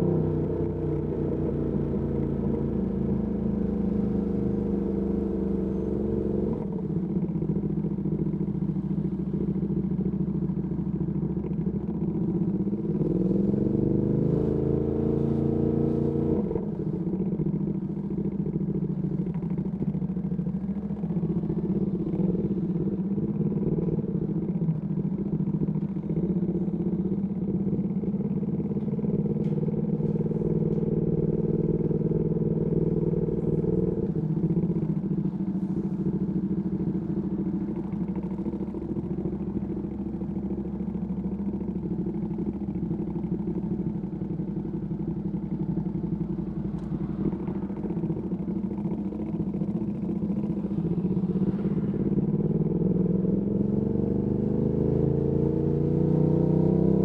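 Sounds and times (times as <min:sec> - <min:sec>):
motorcycle engine revving: 0:45.4 - 0:57.0.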